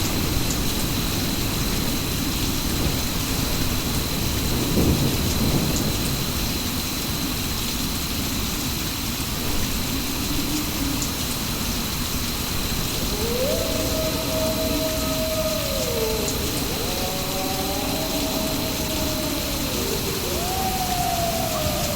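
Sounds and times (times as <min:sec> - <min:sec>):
heavy rain: 0:00.0 - 0:21.9
low roll of thunder: 0:09.3 - 0:21.9.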